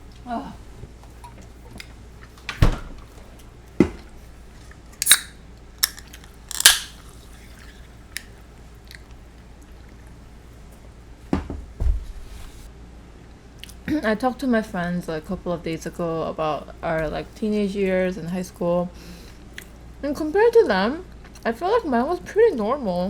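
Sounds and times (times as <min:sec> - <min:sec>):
crisp crunches of eating: 0:04.6 - 0:10.2
quiet chewing: 0:05.8 - 0:10.3, 0:19.5 - 0:19.8.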